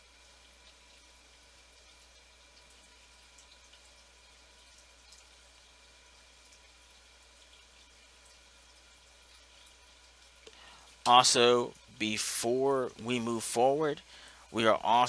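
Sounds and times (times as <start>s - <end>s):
faint steady hiss: 0.0s - 15.0s.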